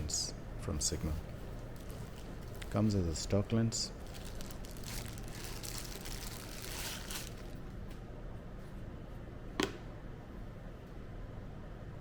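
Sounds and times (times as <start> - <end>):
steady low hum: 0.0 - 12.0
packaging rustling: 1.3 - 7.8.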